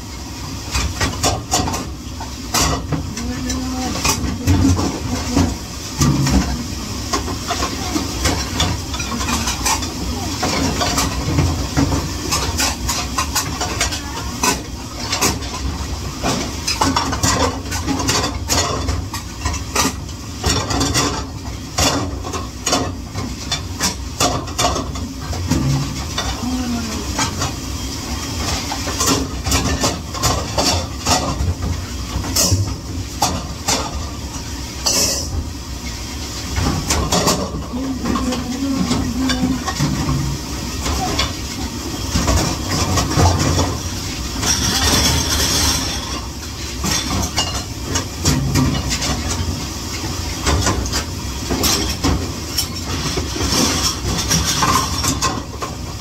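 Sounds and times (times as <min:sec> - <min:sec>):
machine rumble and hiss: 0:00.0 - 0:56.0
dishes clattering: 0:44.4 - 0:49.5, 0:50.4 - 0:55.7.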